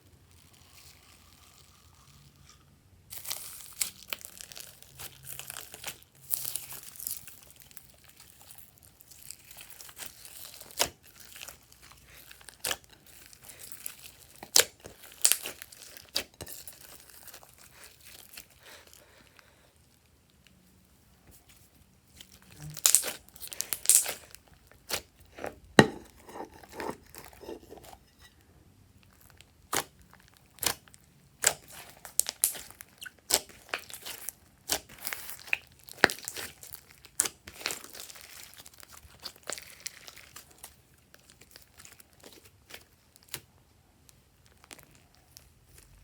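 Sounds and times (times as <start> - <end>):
slime squeezed with sticky pops: 22.3 - 25.2, 30.6 - 40.4.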